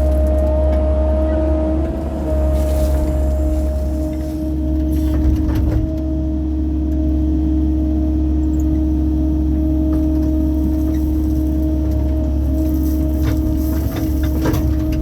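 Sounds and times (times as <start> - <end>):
constant whine: 0.0 - 7.2
excavator engine drone: 0.0 - 15.0.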